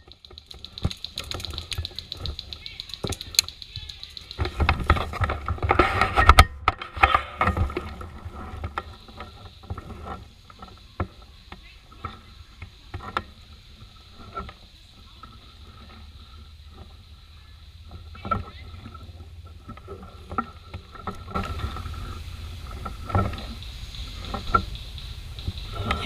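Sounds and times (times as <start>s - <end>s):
twigs snapping: 0.0s - 5.8s
brush and dry leaves crunching: 0.0s - 26.0s.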